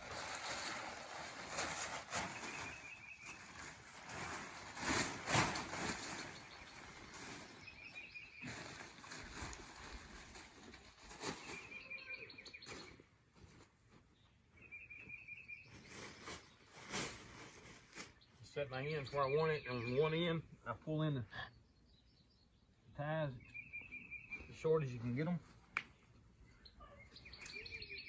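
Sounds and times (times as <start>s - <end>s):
tent fabric rustling: 0.0s - 14.5s, 15.5s - 18.4s
songbird trilling: 19.0s - 20.2s, 23.4s - 24.6s, 26.6s - 28.0s.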